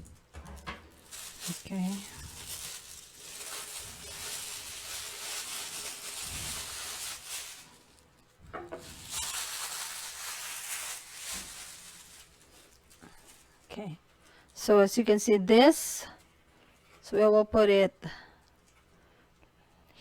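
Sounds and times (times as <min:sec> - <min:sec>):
scraping rustling handling noise: 0:00.0 - 0:13.7.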